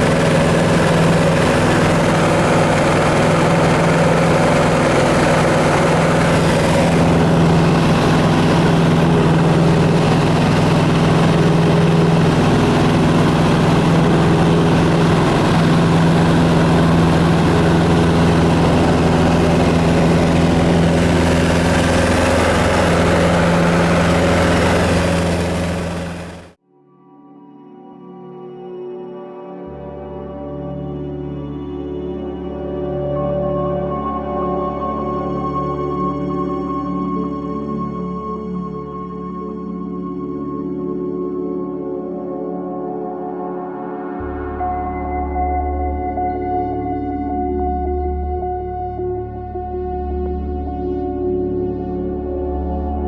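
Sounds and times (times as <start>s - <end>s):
aircraft engine humming: 0.0s - 26.6s.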